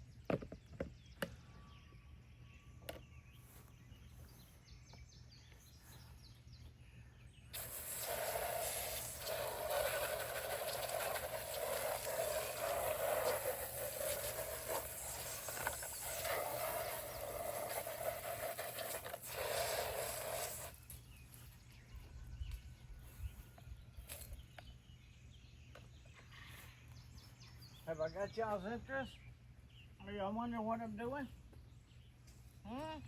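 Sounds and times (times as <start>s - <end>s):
garden hose spraying water: 7.5s - 21.4s.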